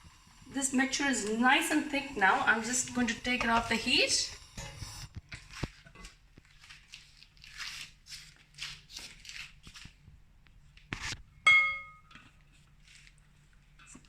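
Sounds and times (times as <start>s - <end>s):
metal clank ringing: 11.5s - 12.1s.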